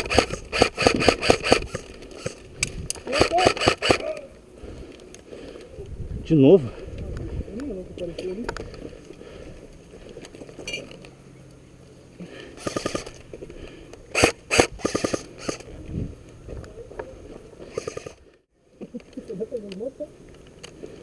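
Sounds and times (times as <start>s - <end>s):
airsoft gun bursts: 0.0s - 4.3s, 12.4s - 13.3s, 14.1s - 15.7s, 17.6s - 18.3s.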